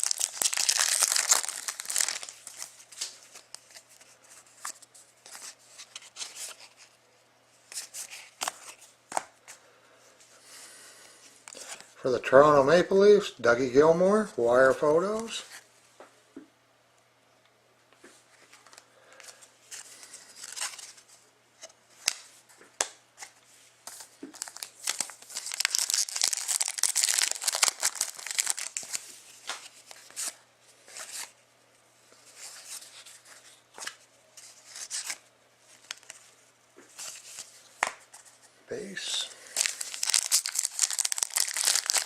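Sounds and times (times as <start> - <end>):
wrapper crinkling and tearing: 0.0 - 3.6, 24.4 - 29.1, 39.5 - 42.0.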